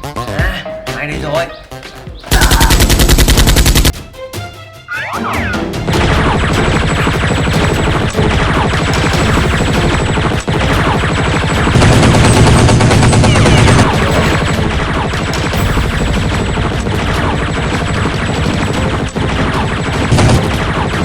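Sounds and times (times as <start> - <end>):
music: 0.0 - 21.0
rapid automatic gunfire: 2.3 - 4.0, 5.9 - 21.0.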